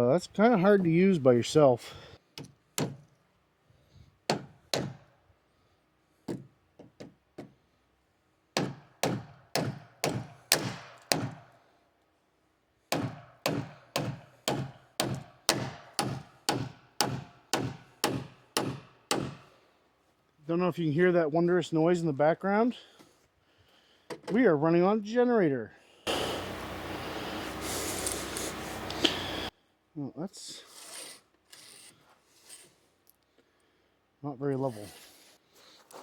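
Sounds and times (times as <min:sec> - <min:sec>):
hammer blows on wood: 0:26.1 - 0:29.5.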